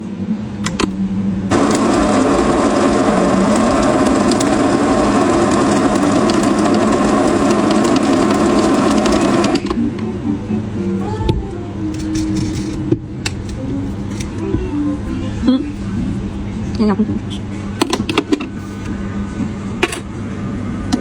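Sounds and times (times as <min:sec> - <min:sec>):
low hum: 0:00.0 - 0:21.0
coffee grinder grinding: 0:01.5 - 0:09.8.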